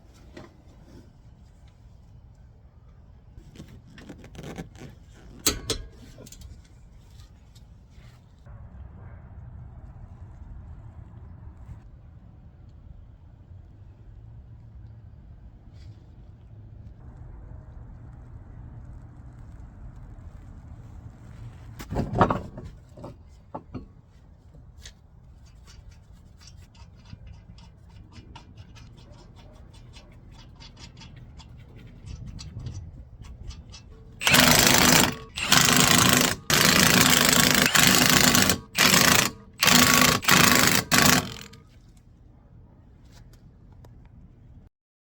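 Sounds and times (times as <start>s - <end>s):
power tool bursts: 34.2s - 41.6s.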